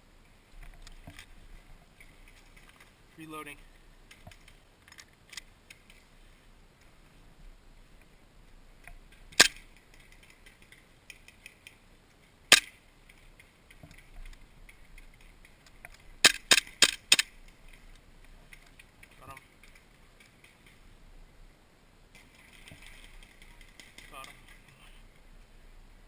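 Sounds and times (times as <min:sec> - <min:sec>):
airsoft gun shots: 0:09.4 - 0:09.6, 0:12.5 - 0:12.8.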